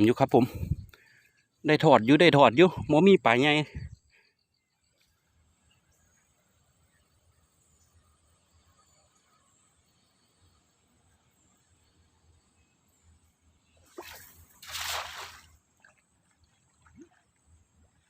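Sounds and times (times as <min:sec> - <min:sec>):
water splashing and sloshing: 0:13.8 - 0:18.0.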